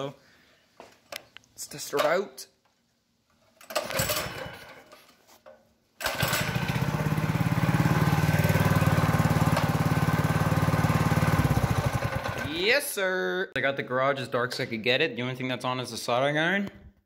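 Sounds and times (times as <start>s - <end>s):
small engine starting and running: 3.8s - 4.8s, 6.0s - 12.6s.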